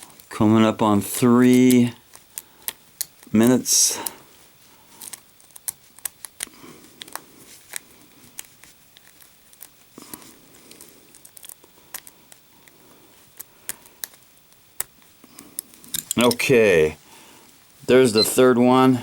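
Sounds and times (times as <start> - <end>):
gloved hands rustling: 0.0 - 19.0
lock pick clicking: 15.6 - 16.4.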